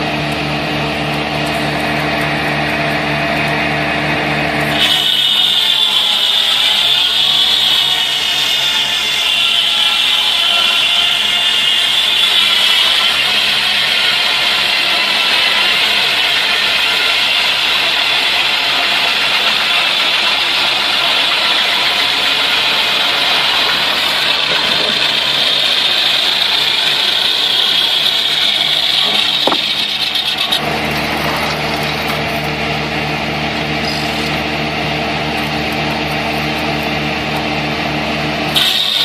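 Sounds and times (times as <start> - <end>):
engine running: 0.0 - 39.0
sawmill cutting log hiss: 4.7 - 30.9, 38.4 - 39.0.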